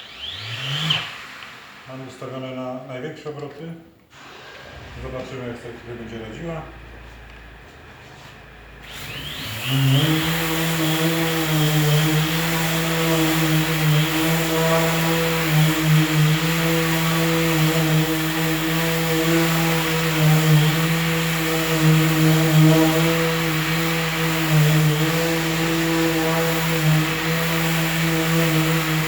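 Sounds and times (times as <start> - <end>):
electric orbital sander running: 0.0 - 1.9, 8.2 - 29.0.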